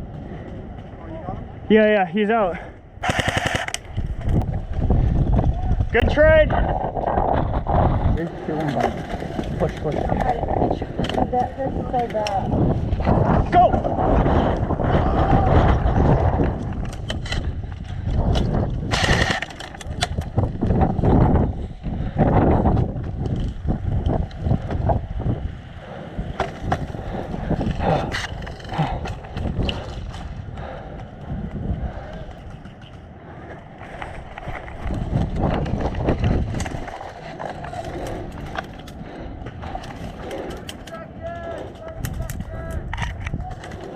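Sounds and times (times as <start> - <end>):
wind rumble on microphone: 0.0 - 2.0, 2.6 - 43.9
airsoft guns firing: 3.0 - 3.9
running footsteps: 25.8 - 43.9.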